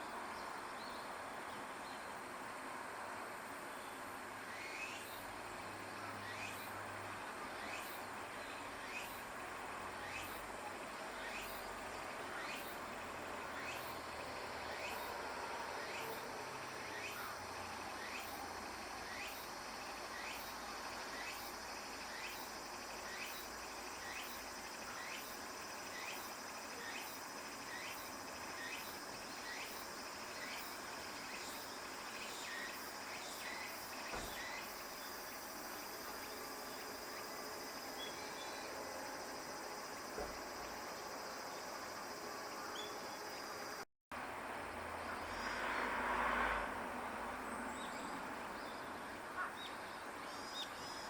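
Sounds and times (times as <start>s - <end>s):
insects trilling: 3.2s - 43.8s.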